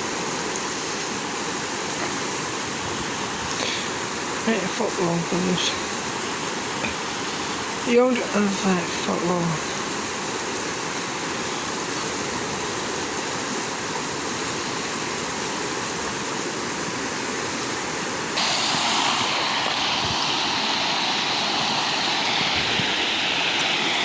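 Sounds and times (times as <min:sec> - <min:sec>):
waterfall rushing water: 0:00.0 - 0:24.0.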